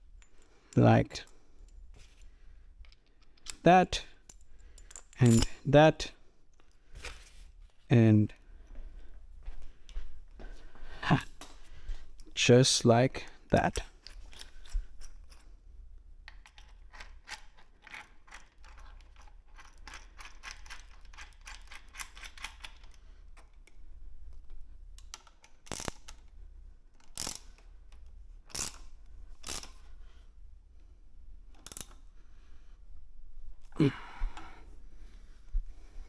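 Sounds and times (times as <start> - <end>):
ratchet wrench clicking: 25.7 - 26.1, 27.2 - 27.5, 28.5 - 28.8, 31.6 - 32.0.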